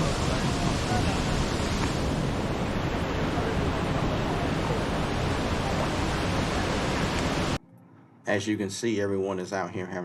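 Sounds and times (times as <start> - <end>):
waterfall rushing: 0.0 - 7.6.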